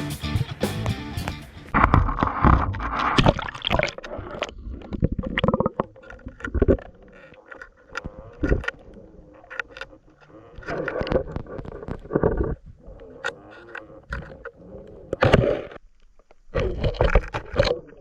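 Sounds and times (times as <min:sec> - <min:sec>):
water sloshing and gurgling: 0:01.7 - 0:18.0.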